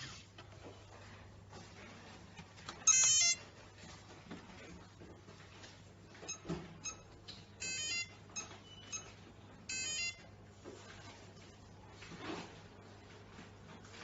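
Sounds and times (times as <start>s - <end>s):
electronic lock beep jingle: 2.9s - 3.4s, 6.3s - 10.2s.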